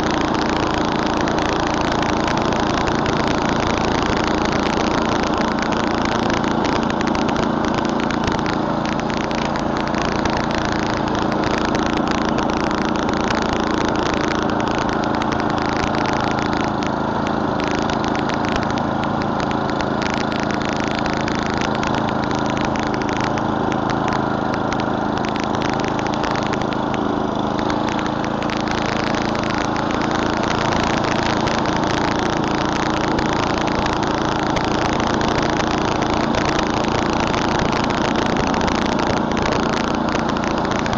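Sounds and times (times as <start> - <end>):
snowblower engine running: 0.0 - 40.9.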